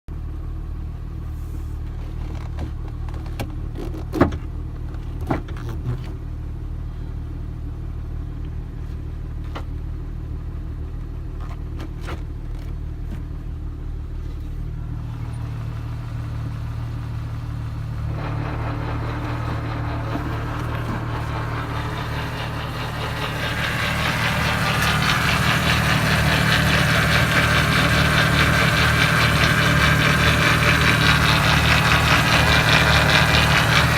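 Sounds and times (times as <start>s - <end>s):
engine running: 0.1s - 33.9s
transmission grinding and whirring: 15.1s - 33.9s.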